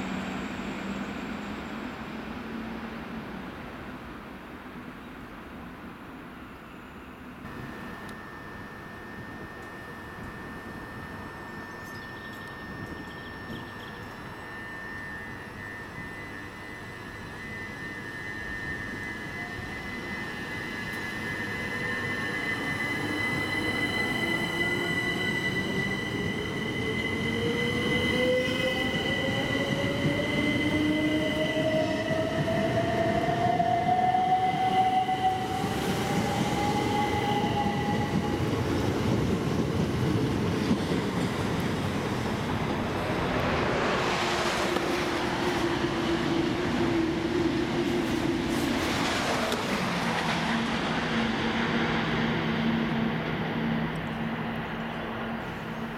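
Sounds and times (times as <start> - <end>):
rush of train noise: 0.0 - 55.9
electric train motor whine: 7.5 - 38.6
wheel and rail noise: 34.9 - 55.9.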